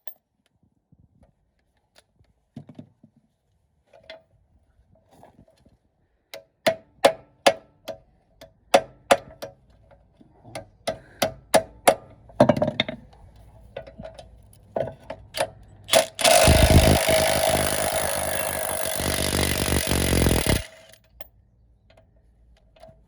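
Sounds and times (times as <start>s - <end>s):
power tool running: 15.9s - 21.0s.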